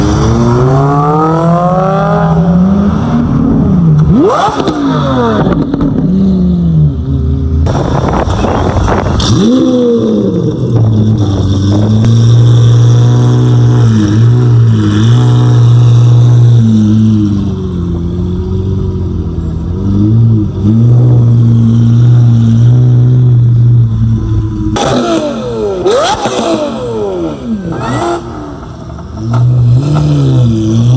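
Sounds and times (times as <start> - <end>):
sports car engine revving: 0.0 - 30.9
exhaust cracks: 24.5 - 30.9.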